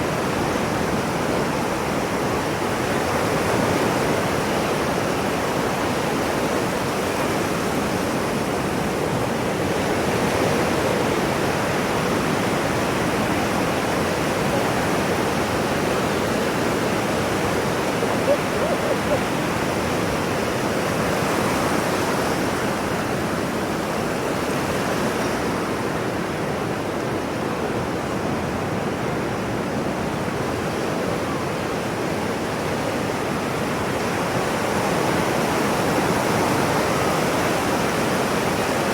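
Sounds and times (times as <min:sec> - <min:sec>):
ocean waves washing: 0:10.0 - 0:22.4.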